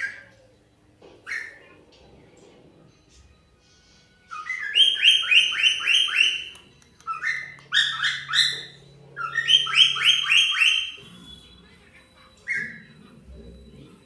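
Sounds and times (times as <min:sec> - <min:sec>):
cockatiel whistling: 0:04.3 - 0:11.6.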